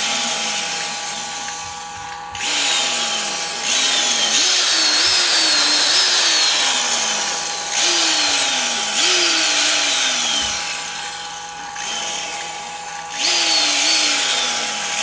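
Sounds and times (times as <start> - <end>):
electric drill motor whine: 0.0 - 15.0.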